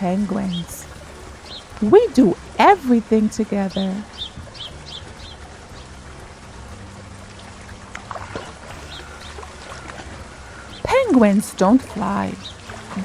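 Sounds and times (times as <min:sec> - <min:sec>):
running water with low hum: 0:00.0 - 0:13.0
high bird chirps: 0:03.7 - 0:06.0.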